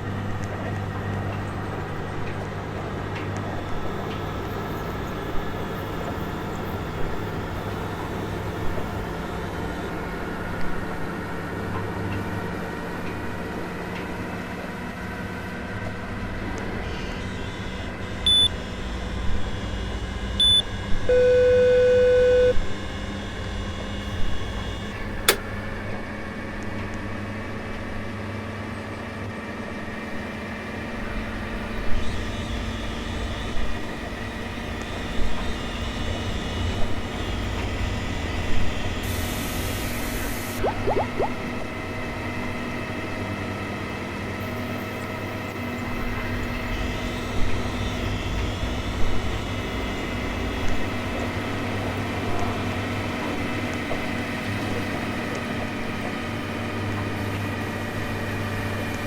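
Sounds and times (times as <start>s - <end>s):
short high beeps: 18.3s - 18.5s, 20.4s - 22.5s, 40.6s - 41.3s
loud steady beep: 18.3s - 18.6s, 20.4s - 22.6s
washing machine running: 22.8s - 25.9s, 40.6s - 41.6s
sharp click: 25.2s - 25.6s.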